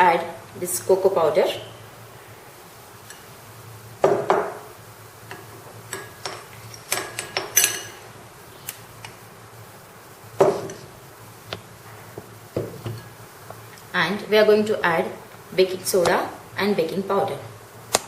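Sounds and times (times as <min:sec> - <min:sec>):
utensils and dishes clinking: 0:05.3 - 0:08.1.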